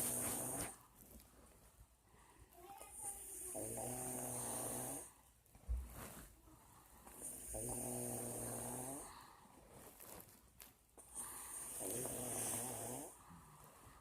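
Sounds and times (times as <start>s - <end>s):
woman snoring: 3.2s - 5.1s, 7.2s - 9.2s, 11.1s - 13.4s.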